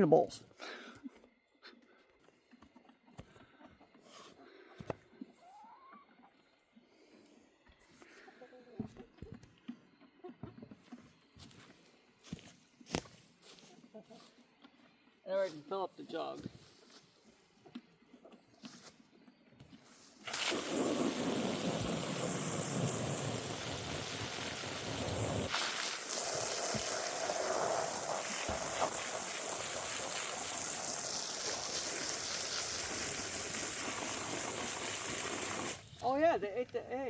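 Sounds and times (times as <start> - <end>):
water running into a jug: 20.3 - 36.1.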